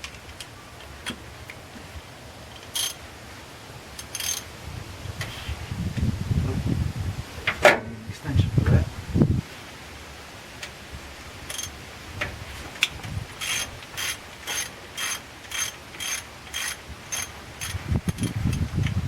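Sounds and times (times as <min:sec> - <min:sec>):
ratchet wrench clicking: 0:02.6 - 0:03.0, 0:04.0 - 0:04.5, 0:11.5 - 0:11.8, 0:13.4 - 0:18.6
tool handling: 0:04.0 - 0:04.5, 0:11.5 - 0:11.8, 0:13.4 - 0:19.0.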